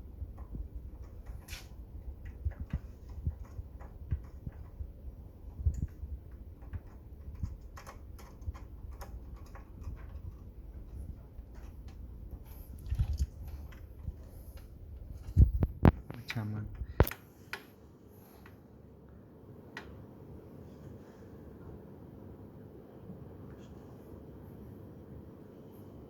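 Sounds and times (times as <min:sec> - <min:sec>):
light clicks and taps: 0:00.1 - 0:17.8.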